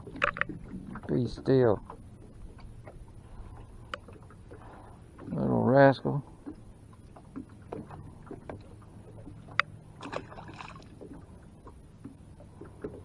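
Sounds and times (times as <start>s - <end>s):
light clicks and knocks: 0.0s - 3.0s.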